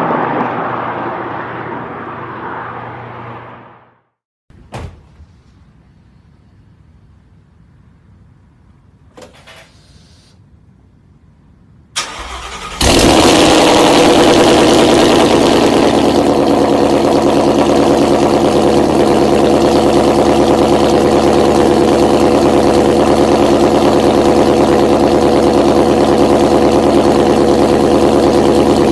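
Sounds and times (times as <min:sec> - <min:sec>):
car engine idling: 0:12.0 - 0:28.9.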